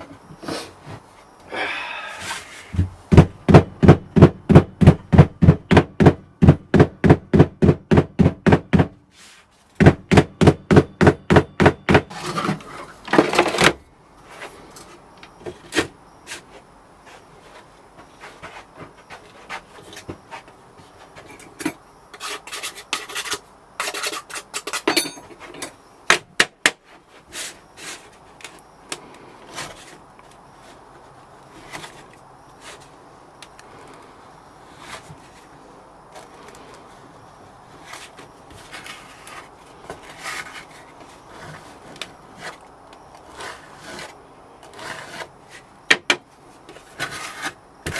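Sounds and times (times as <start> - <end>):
sand scraping: 2.1 - 3.0, 9.1 - 9.7, 12.0 - 13.6, 22.2 - 24.6, 36.3 - 45.8, 46.5 - 47.9
scattered knocks: 2.8 - 9.0, 9.8 - 12.1.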